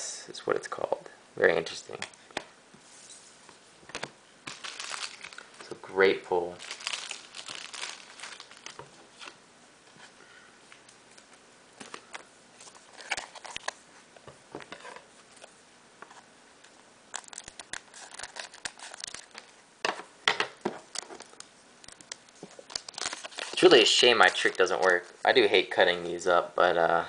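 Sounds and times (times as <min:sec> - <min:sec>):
foil wrapper crinkling: 0:04.5 - 0:05.8, 0:06.5 - 0:09.4, 0:17.1 - 0:19.5, 0:20.9 - 0:25.0.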